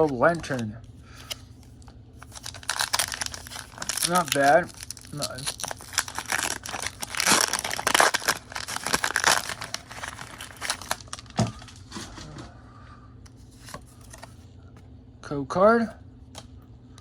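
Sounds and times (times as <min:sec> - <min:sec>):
foil wrapper crinkling and tearing: 0:01.2 - 0:12.0.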